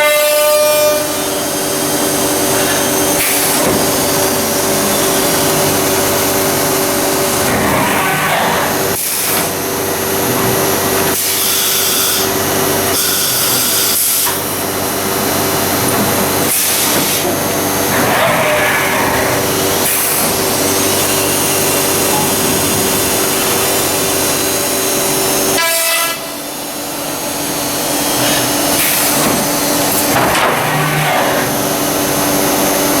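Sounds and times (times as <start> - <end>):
machine hissing and humming: 0.2 - 33.0.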